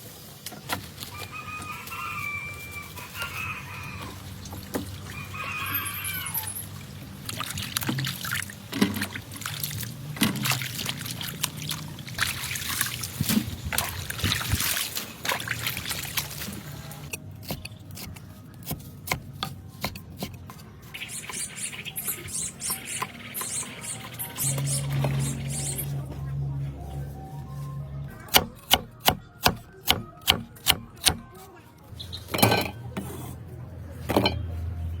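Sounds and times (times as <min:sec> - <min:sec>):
water splashing and sloshing: 0:00.0 - 0:26.9.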